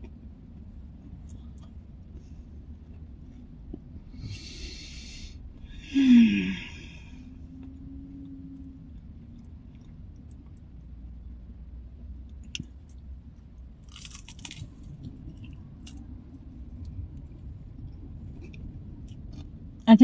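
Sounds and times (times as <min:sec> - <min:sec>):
person chewing: 0:13.8 - 0:16.0
cracker crunching: 0:13.8 - 0:16.1.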